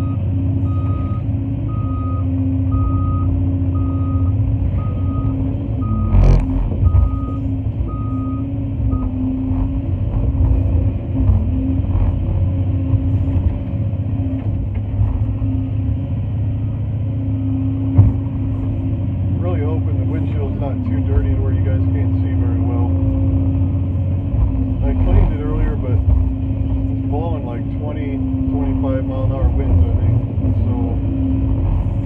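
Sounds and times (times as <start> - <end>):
truck backup alarm beeping: 0.0 - 9.7
excavator diesel engine drone: 0.0 - 32.0.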